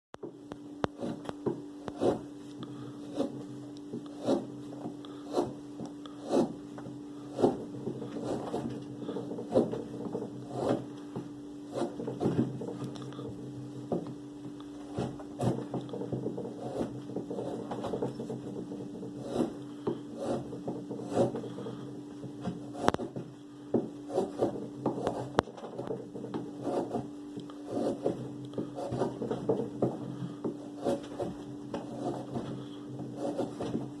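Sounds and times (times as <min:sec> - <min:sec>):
steady low hum: 0:00.2 - 0:34.0
blade slicing wood: 0:00.9 - 0:02.2, 0:06.2 - 0:06.6, 0:19.2 - 0:21.4, 0:27.7 - 0:29.4.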